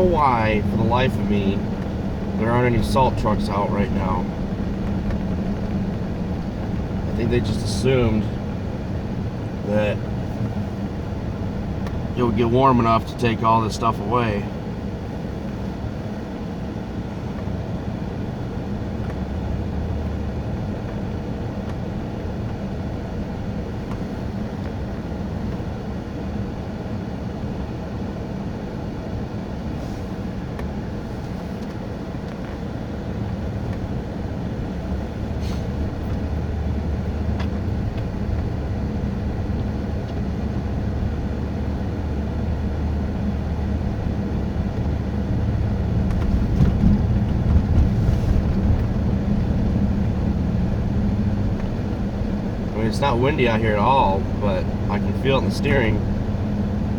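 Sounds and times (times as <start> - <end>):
car engine rumble in cabin: 0.0 - 56.9
tyre road noise: 0.0 - 56.9.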